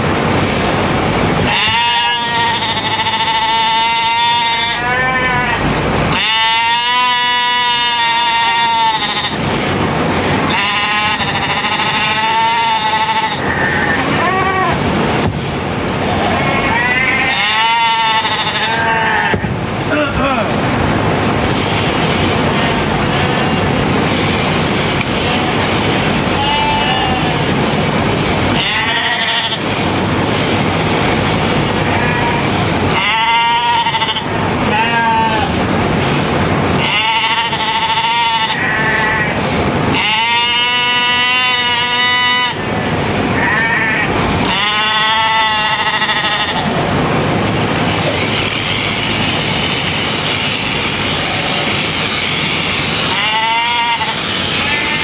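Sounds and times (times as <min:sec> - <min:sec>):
steady rushing noise: 0:00.0 - 0:01.6, 0:09.4 - 0:10.6, 0:13.4 - 0:17.3, 0:18.6 - 0:28.6, 0:29.5 - 0:33.0, 0:46.6 - 0:53.2
sheep bleating: 0:01.5 - 0:09.4, 0:10.5 - 0:14.8, 0:16.1 - 0:19.4, 0:26.4 - 0:27.5, 0:28.6 - 0:29.6, 0:31.8 - 0:35.5, 0:36.8 - 0:39.4, 0:40.0 - 0:42.6, 0:43.4 - 0:46.8, 0:53.1 - 0:55.0.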